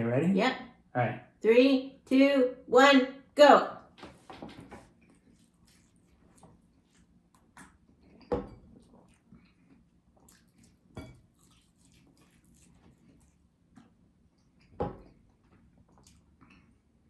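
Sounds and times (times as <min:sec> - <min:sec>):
wet chewing and squishing: 0:04.9 - 0:16.8.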